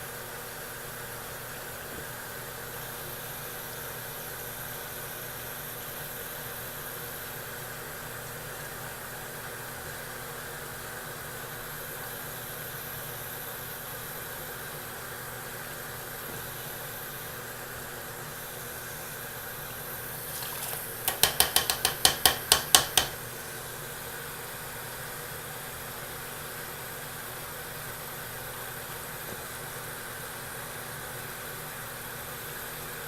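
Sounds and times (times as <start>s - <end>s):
mechanical hum: 0.0s - 33.0s
sharp hard taps: 20.3s - 23.2s.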